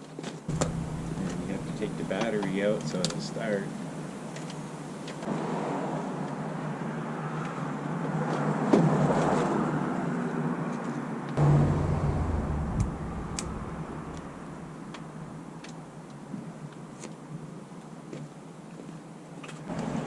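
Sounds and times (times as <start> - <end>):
heavy thud of battery: 0.5 - 3.0, 11.4 - 15.4.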